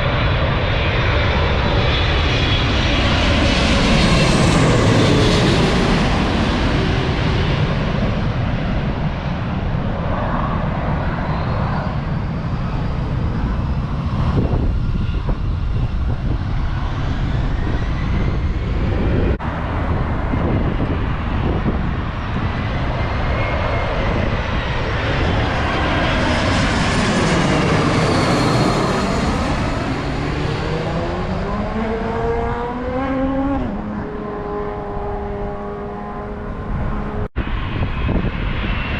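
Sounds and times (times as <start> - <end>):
falling and rising jet whine: 0.0 - 38.9
jet airliners passing overhead: 0.0 - 38.9
wind buffeting microphone: 0.0 - 38.9.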